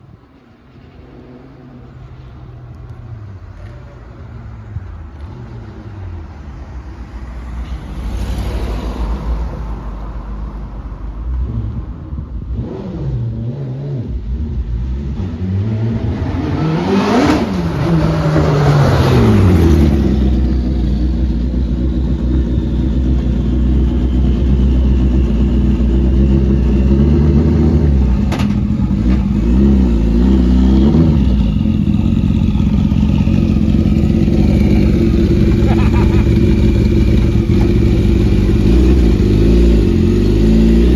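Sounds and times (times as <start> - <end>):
motorcycle engine revving: 12.4 - 40.9.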